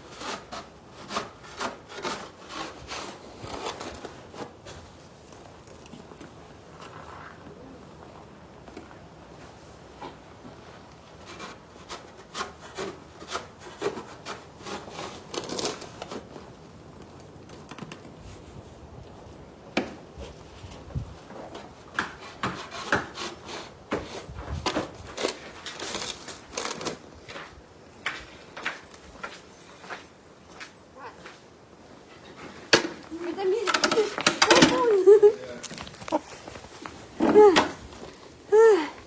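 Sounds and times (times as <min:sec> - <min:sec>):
shovel scraping snow and ice: 0:00.0 - 0:05.0.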